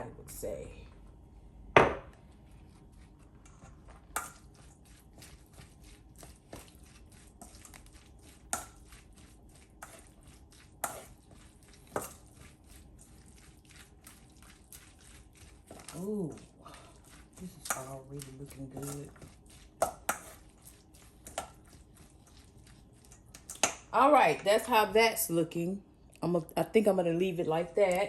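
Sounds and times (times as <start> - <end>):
utensil tossing salad in bowl: 2.4 - 24.8.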